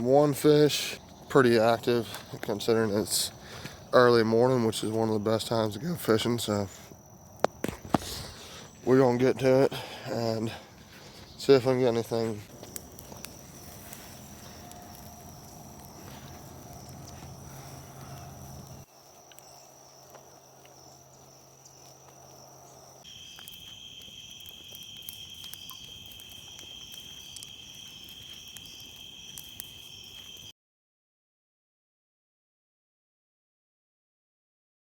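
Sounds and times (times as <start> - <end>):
insect chorus low buzz: 0.0 - 30.5
insects trilling: 0.0 - 30.5
small ticks: 12.6 - 22.2, 23.1 - 30.5.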